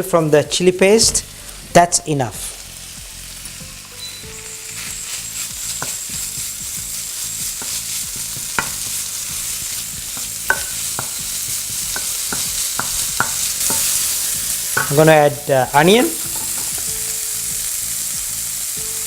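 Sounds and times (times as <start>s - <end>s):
spice paste sizzling in a pan: 0.0s - 19.0s
utensil tapping against pan: 7.6s - 9.1s, 10.0s - 15.1s.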